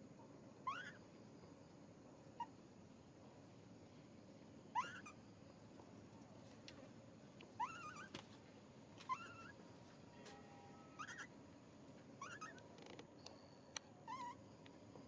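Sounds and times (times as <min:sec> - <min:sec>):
baby monkey crying: 0:00.6 - 0:01.0, 0:04.7 - 0:05.2, 0:07.6 - 0:08.1, 0:09.1 - 0:09.6, 0:10.9 - 0:11.4, 0:12.2 - 0:12.6, 0:14.0 - 0:14.4.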